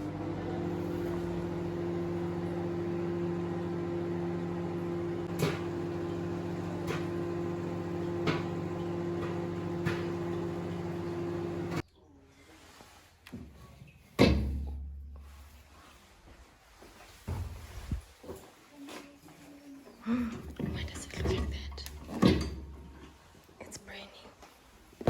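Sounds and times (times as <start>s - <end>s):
microwave oven humming: 0.0s - 11.8s, 20.0s - 23.2s.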